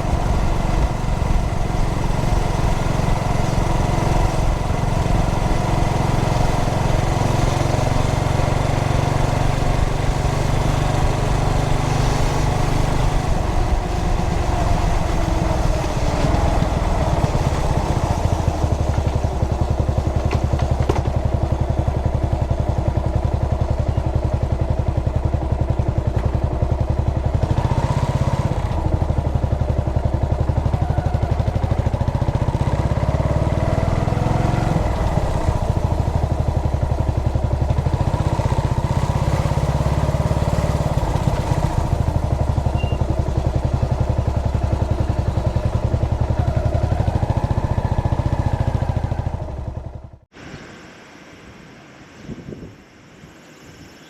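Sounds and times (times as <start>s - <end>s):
motorcycle engine running: 0.0s - 50.3s.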